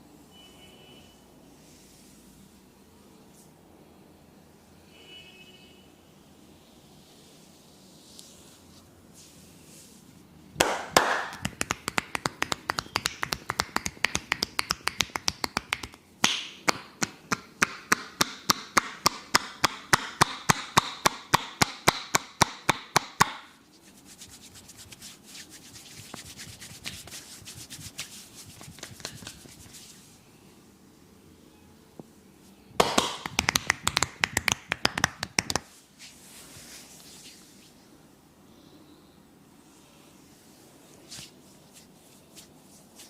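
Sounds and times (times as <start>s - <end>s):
soft rubbing: 6.8s - 10.5s, 23.5s - 30.7s, 35.3s - 38.1s, 39.6s - 43.0s
hands tapping in massage: 10.6s - 23.5s, 24.3s - 29.8s, 32.8s - 35.7s.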